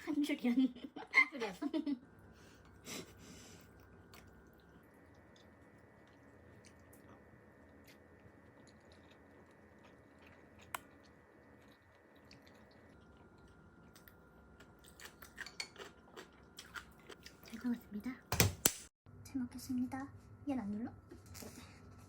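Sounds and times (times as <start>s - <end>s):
faint chewing: 2.5s - 17.8s
sharp click: 18.4s - 18.9s.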